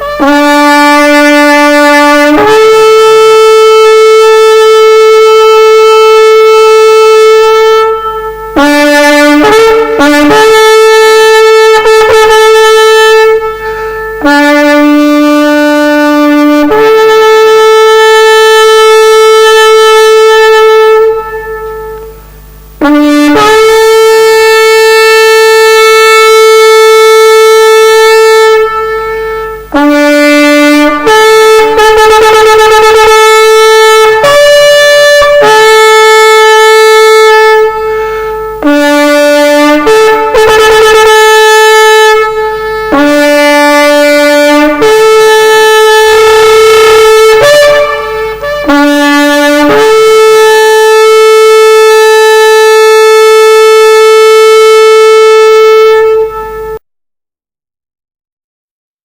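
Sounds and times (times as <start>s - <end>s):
ram's horn blasts: 0.0s - 56.8s
breaths: 37.8s - 38.6s.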